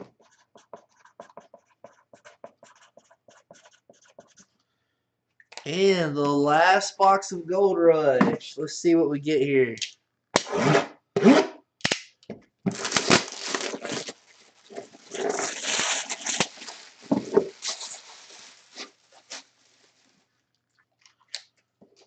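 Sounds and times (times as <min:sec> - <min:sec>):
packaging tearing and crinkling: 0:12.7 - 0:20.2.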